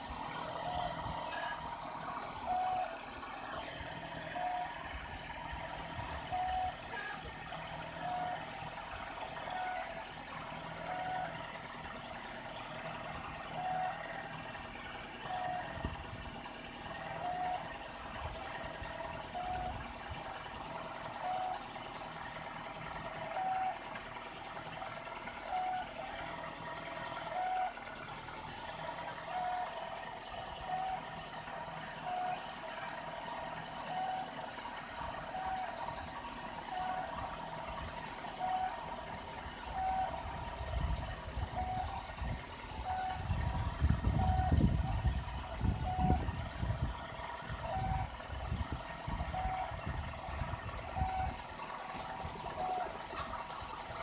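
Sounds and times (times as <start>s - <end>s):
car engine idling: 0.0s - 54.0s.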